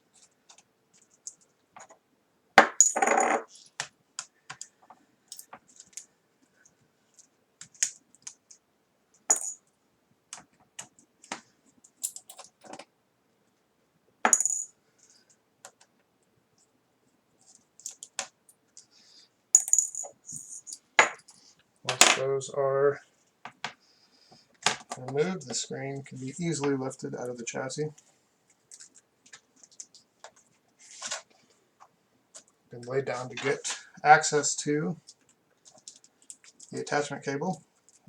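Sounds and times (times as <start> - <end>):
small metallic clinks: 5.3 - 6.0, 9.2 - 9.7, 12.0 - 12.7, 19.6 - 21.5.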